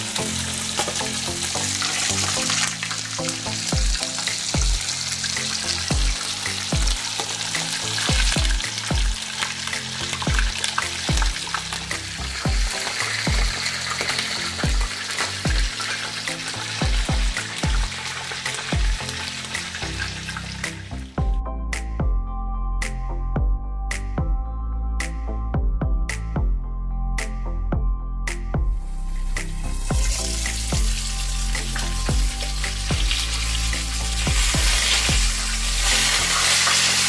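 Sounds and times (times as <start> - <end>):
food sizzling in hot oil: 0.0 - 21.1, 29.2 - 37.0
background music with low beat: 0.0 - 37.0.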